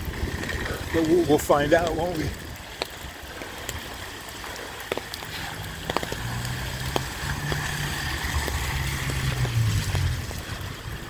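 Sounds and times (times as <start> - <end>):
rain falling: 0.0 - 11.0
low vehicle engine hum: 2.2 - 11.0.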